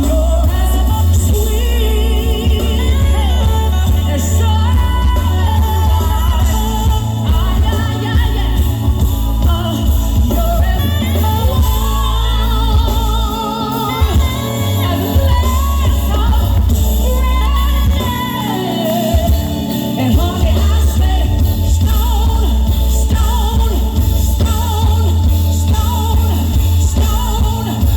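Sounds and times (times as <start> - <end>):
live band with heavy bass: 0.0 - 27.9
person singing with vibrato: 0.0 - 27.9.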